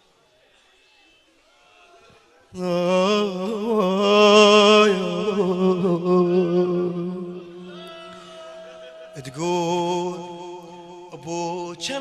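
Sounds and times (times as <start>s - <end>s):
person singing a wordless lament: 2.6s - 12.0s.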